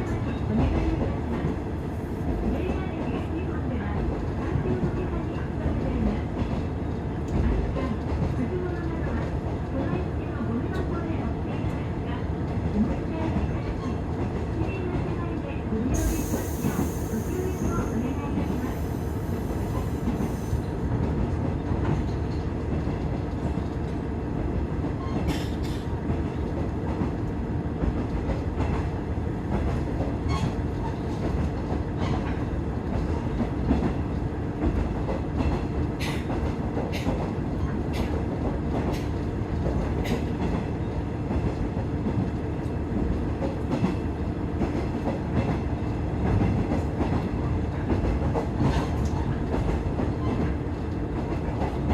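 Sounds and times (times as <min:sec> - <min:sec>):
railcar engine and wheels rumbling: 0:00.0 - 0:51.9.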